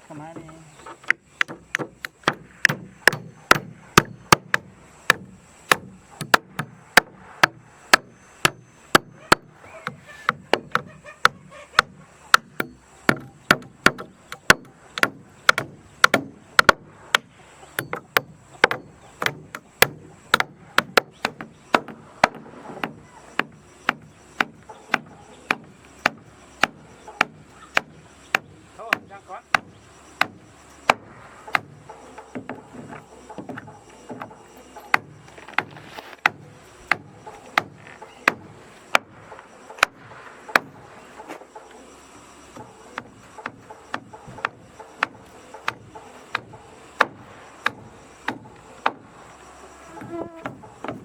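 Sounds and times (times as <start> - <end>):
hammer striking wood: 0.3 - 51.0.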